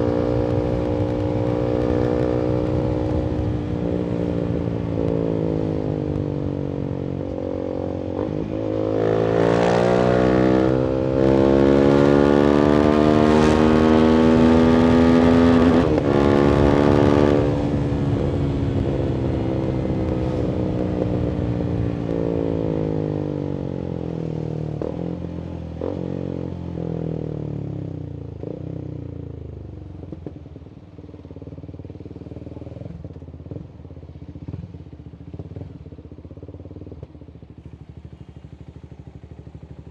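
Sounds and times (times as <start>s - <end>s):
motorcycle engine revving: 0.0s - 30.6s.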